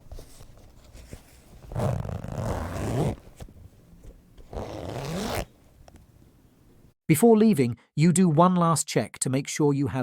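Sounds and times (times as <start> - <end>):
zipper pulled: 1.7 - 3.5, 4.4 - 5.5.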